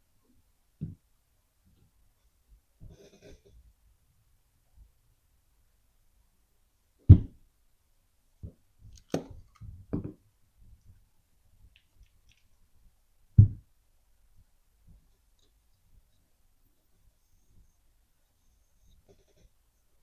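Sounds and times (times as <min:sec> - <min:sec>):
objects thudding on hard surface: 0:08.4 - 0:10.2, 0:13.4 - 0:13.7.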